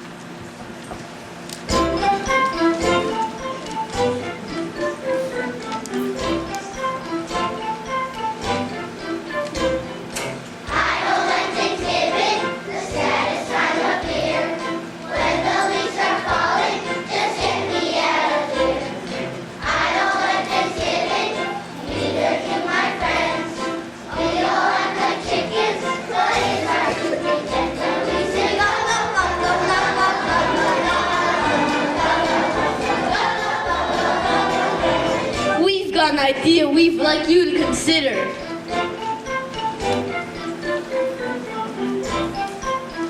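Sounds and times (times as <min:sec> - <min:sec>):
instrumental accompaniment with beat: 0:00.4 - 0:35.6, 0:37.6 - 0:43.0
children's choir singing: 0:01.7 - 0:43.0.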